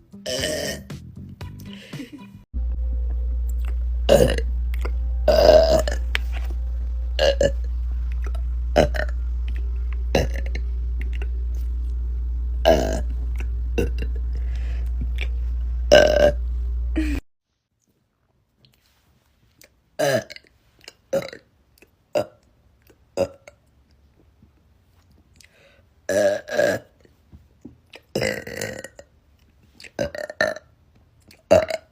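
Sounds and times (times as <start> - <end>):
woman burping loudly: 0.2 - 0.9, 4.1 - 6.0, 7.2 - 7.6, 8.8 - 9.2, 10.1 - 11.3, 12.6 - 14.4, 15.9 - 16.4, 17.0 - 17.2, 20.0 - 20.5, 21.1 - 21.4, 26.1 - 27.0, 28.1 - 29.1, 30.0 - 30.7, 31.5 - 31.9
steady low hum: 1.7 - 17.2.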